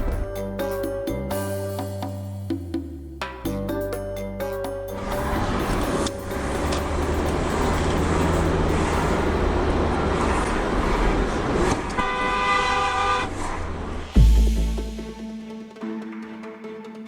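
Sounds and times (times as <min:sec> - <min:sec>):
traffic road noise: 0:05.0 - 0:14.2
car horn honk: 0:11.9 - 0:13.4.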